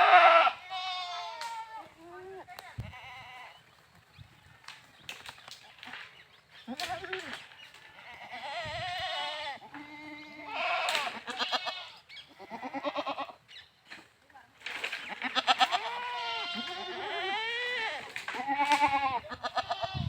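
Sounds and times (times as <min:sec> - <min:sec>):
goats bleating: 0:00.0 - 0:03.6, 0:06.7 - 0:13.4, 0:15.1 - 0:20.0.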